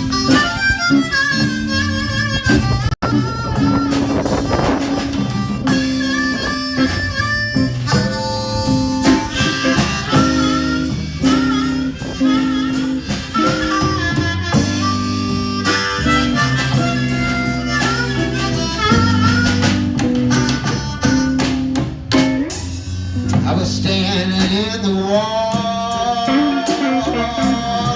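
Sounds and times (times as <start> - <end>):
blues harmonica solo: 0.0 - 27.9
guitar accompaniment: 0.0 - 27.9
repeating bass line: 0.0 - 27.9.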